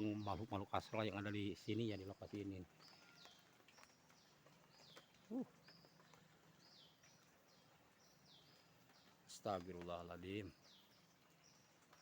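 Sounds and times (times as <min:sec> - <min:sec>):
faint bird calls: 0:05.2 - 0:05.9.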